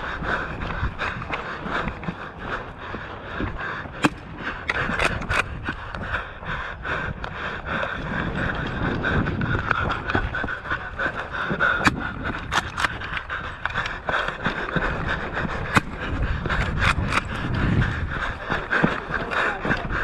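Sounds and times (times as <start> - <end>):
person panting: 0.0 - 20.0
sharp clicks: 4.0 - 6.0, 11.8 - 14.0.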